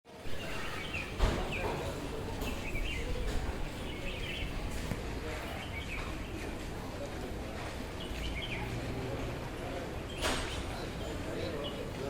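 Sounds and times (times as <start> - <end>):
small birds chirping: 0.2 - 4.9
thump: 1.2 - 1.8.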